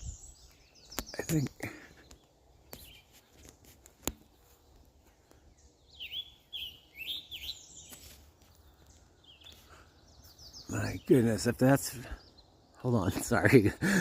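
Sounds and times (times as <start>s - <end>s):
bird singing burry phrases: 0.0s - 3.1s, 5.4s - 7.9s, 8.6s - 14.0s.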